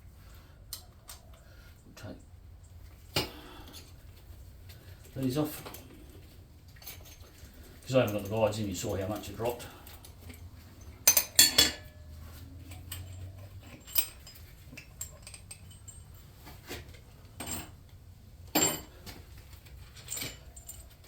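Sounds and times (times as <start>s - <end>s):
metal tools clinking: 4.9s - 17.8s, 18.5s - 21.0s.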